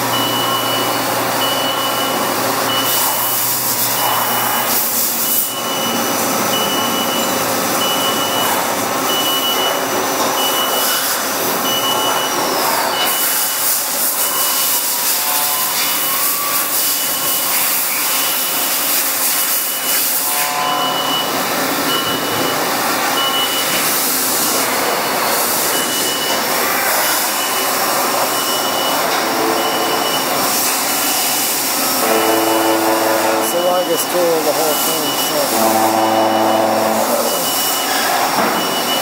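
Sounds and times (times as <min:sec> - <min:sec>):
short high beep: 0:19.7 - 0:22.6, 0:28.3 - 0:30.4, 0:32.0 - 0:39.0.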